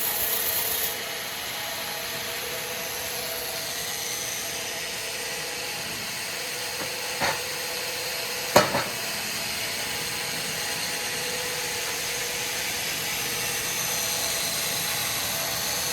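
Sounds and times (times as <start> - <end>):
sawmill machinery hissing and humming: 0.0 - 15.9
knocks: 6.8 - 7.4, 8.6 - 9.0.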